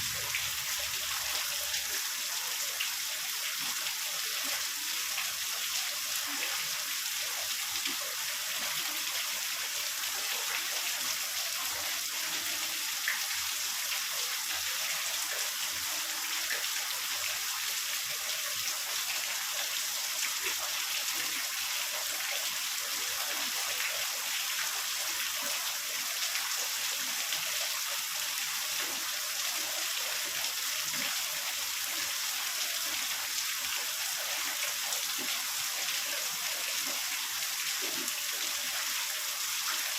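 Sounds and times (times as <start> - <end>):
heavy rain hissing: 0.0 - 1.8.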